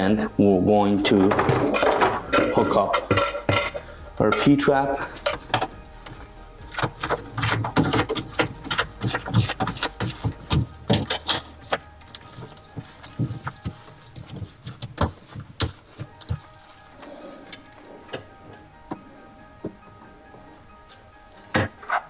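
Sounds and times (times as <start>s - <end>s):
drain fittings clicking and knocking: 1.1s - 12.2s.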